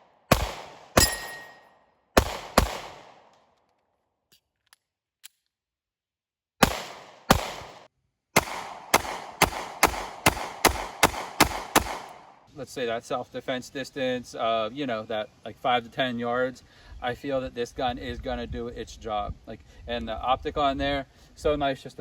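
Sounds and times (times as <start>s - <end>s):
pistol shots: 0.3s - 1.6s, 2.2s - 3.3s, 6.6s - 12.4s.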